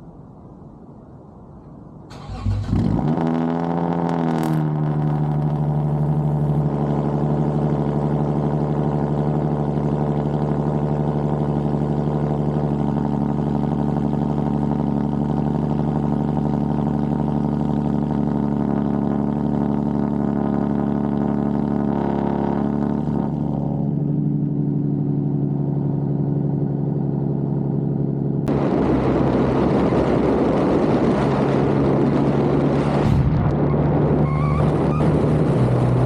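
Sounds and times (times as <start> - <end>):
car engine starting and idling: 2.0 - 36.0.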